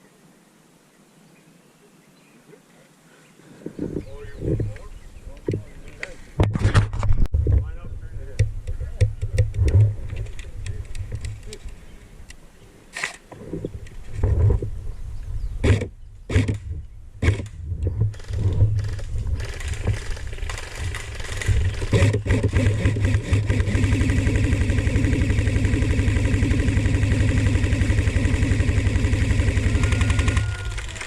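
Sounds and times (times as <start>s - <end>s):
small engine starting and idling: 18.1s - 31.0s.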